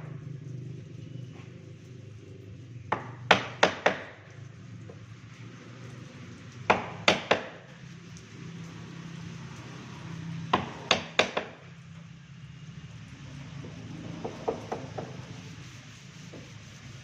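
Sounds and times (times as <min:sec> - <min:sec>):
hammer striking wood: 0:02.9 - 0:04.2, 0:06.7 - 0:07.6, 0:10.6 - 0:11.6.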